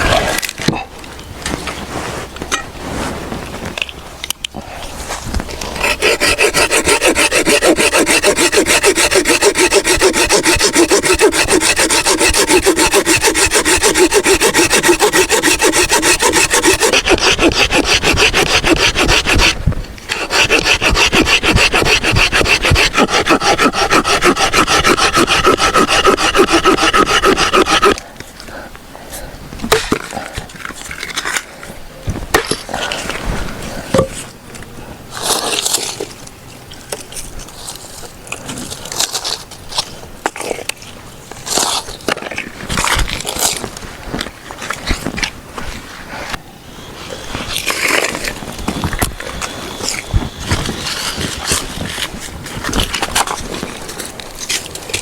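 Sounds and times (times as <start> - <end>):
saw cutting through wood: 5.6 - 28.0.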